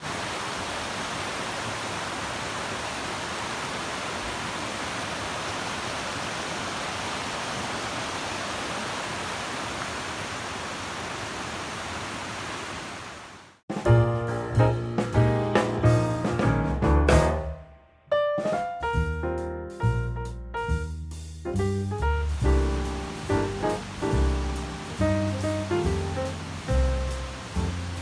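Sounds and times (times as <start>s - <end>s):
stream rushing: 0.0s - 13.6s, 22.3s - 28.0s.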